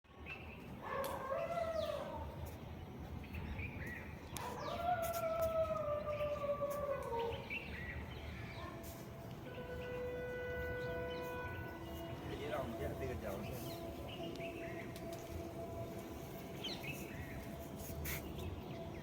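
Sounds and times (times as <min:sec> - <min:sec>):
dog howling: 0:04.6 - 0:07.4.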